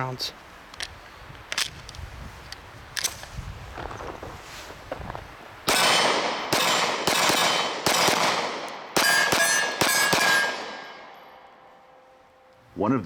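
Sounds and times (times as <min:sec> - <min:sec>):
pistol shots: 0:05.7 - 0:11.1.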